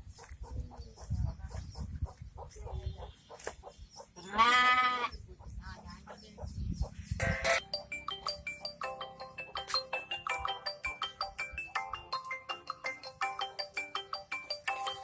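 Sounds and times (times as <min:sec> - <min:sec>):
goat bleating: 0:04.2 - 0:05.1, 0:07.2 - 0:07.6.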